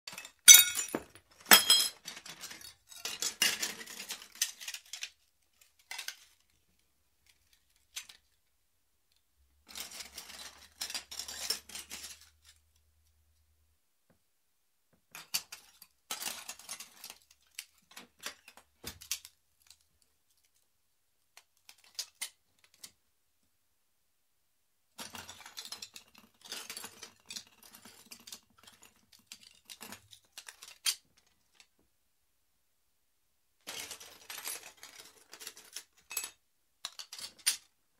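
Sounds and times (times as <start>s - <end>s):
broken glass shards clinking: 0.2s - 2.0s.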